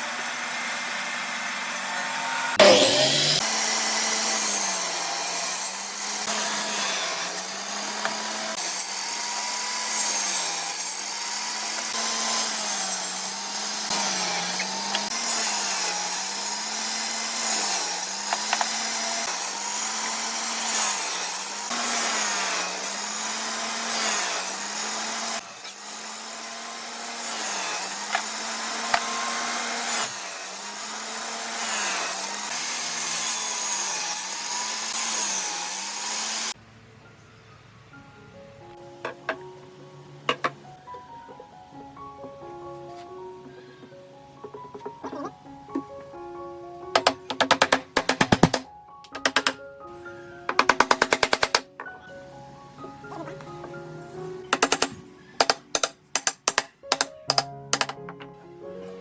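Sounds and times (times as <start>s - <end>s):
electric power tool cutting wood: 0.0s - 36.6s, 53.1s - 58.0s.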